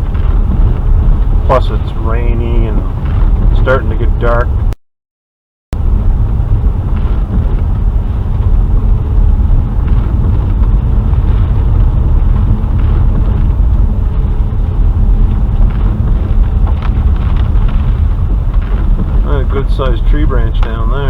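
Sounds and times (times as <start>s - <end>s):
car engine and tyre rumble: 0.0s - 4.8s, 5.8s - 21.0s.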